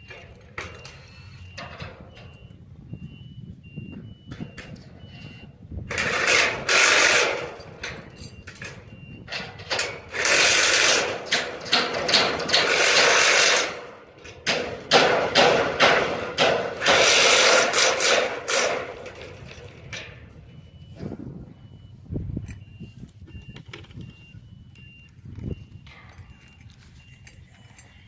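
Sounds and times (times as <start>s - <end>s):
power tool running in bursts: 5.9s - 7.6s, 10.1s - 11.2s, 12.5s - 13.8s
sharp metallic knocks: 5.9s - 20.4s.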